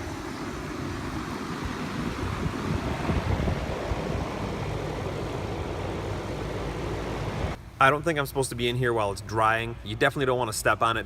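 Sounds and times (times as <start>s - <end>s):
low rumbling noise: 0.0s - 8.7s.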